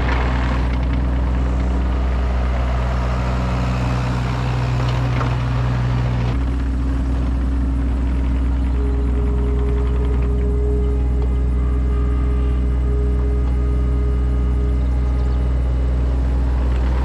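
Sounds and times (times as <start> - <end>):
earth-moving machine engine running: 0.0 - 17.0.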